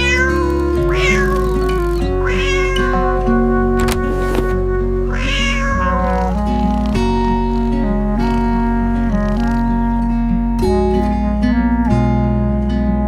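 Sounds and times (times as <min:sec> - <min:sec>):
cat meowing: 0:00.0 - 0:03.4, 0:05.1 - 0:06.4
gentle background music: 0:00.0 - 0:13.0.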